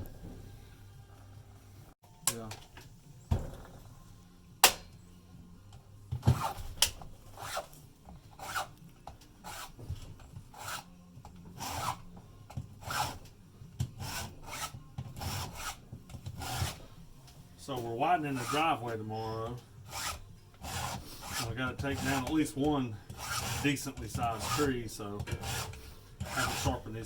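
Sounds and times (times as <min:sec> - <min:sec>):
sharp click: 0:04.6 - 0:05.0
file rasping on chain teeth: 0:08.3 - 0:08.8, 0:09.4 - 0:09.8, 0:10.5 - 0:10.9, 0:11.5 - 0:12.0, 0:12.8 - 0:13.3, 0:14.0 - 0:16.9, 0:18.3 - 0:18.6, 0:19.9 - 0:22.5, 0:23.1 - 0:26.9.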